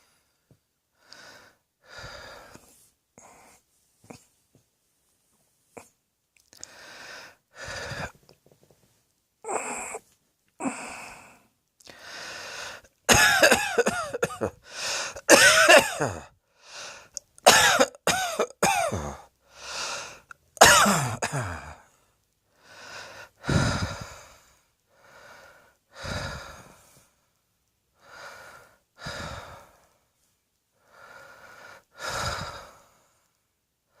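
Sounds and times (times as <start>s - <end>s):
person breathing: 0.0s - 4.2s, 6.6s - 8.2s, 10.6s - 12.9s, 14.6s - 15.3s, 16.5s - 17.2s, 19.4s - 20.3s, 21.5s - 27.3s, 28.0s - 30.0s, 30.8s - 33.4s
person coughing hard: 13.1s - 16.3s, 17.4s - 19.3s, 20.6s - 21.8s.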